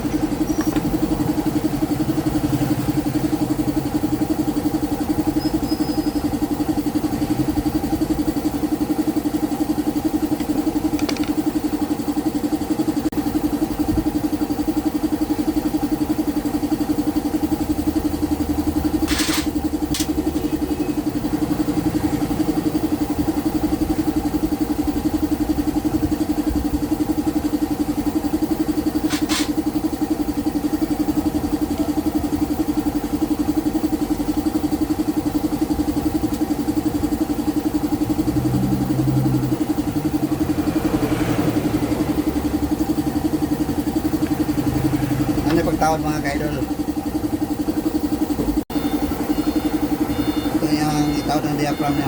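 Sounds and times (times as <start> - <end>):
motorcycle engine idling: 0.0 - 52.0.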